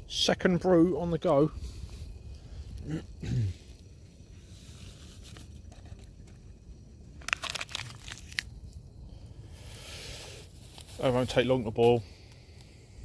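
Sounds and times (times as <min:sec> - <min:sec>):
crinkling crackling clicks: 0:07.2 - 0:08.8.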